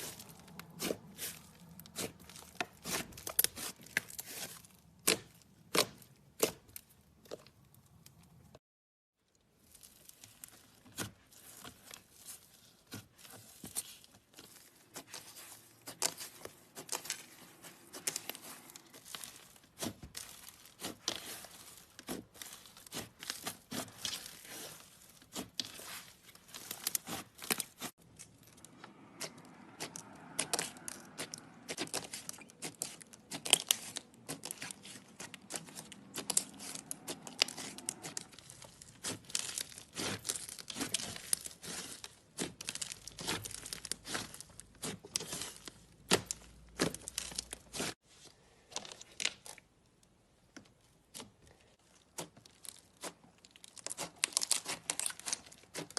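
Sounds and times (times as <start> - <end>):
slime squeezed and stretched: 9.6 - 48.0, 51.1 - 55.9.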